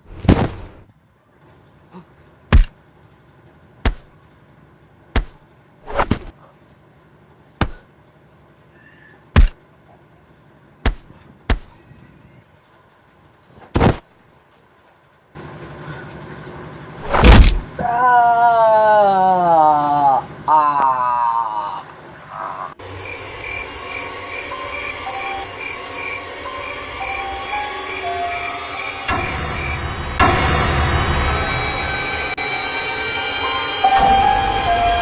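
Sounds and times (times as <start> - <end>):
sharp impact hits: 17.0 - 17.8, 22.8 - 35.0
falling whistle-like tone: 22.9 - 35.0.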